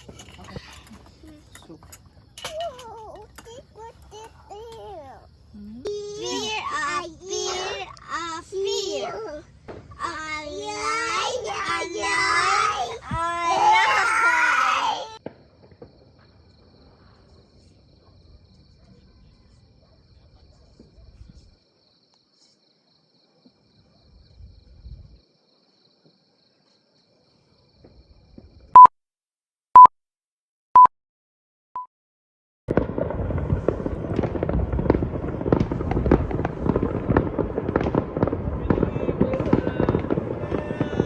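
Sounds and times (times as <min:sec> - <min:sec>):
fireworks and firecrackers crackling: 0:00.0 - 0:18.8, 0:32.7 - 0:41.0.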